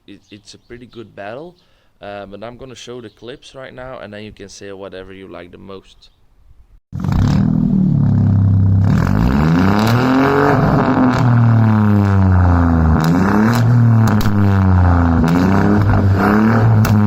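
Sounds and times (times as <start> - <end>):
car exhaust revving: 7.0 - 17.0.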